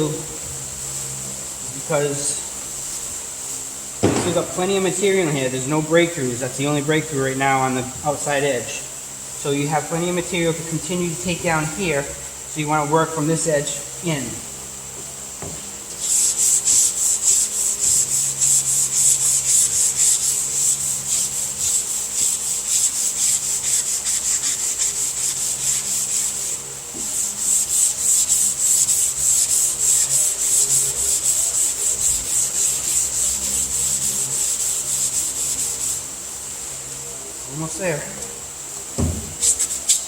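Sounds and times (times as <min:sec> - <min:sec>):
sandpaper rubbing back and forth: 0:00.7 - 0:08.8, 0:15.9 - 0:36.2, 0:39.3 - 0:40.0.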